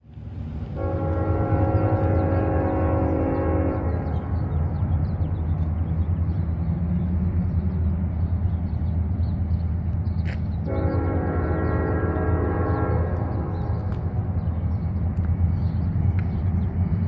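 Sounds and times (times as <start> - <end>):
distant train rumble: 0.0 - 17.0
train horn blast: 0.7 - 4.9, 10.6 - 14.2.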